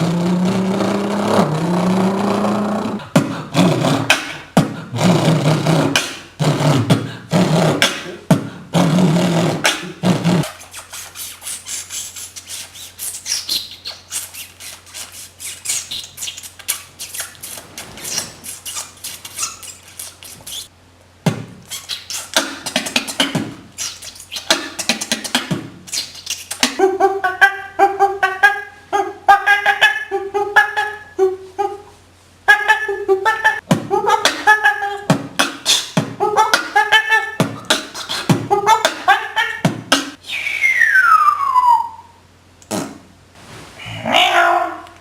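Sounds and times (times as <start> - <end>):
beatboxing clicks and chirps: 0.0 - 20.7, 21.3 - 26.9, 33.4 - 41.6, 42.6 - 43.0.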